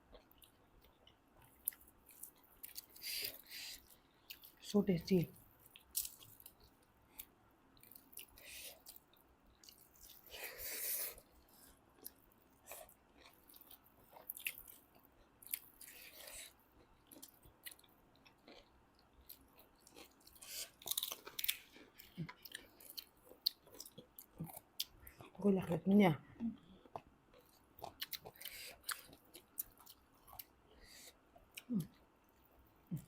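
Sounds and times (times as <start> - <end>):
people chewing: 5.7 - 25.4, 26.4 - 33.0.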